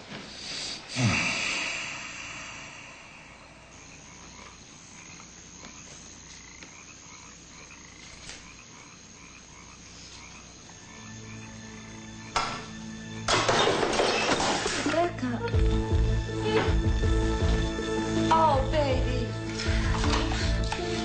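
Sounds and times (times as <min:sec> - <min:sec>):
frogs and insects chirping: 0:00.5 - 0:18.3
low sustained music tones: 0:08.5 - 0:21.0.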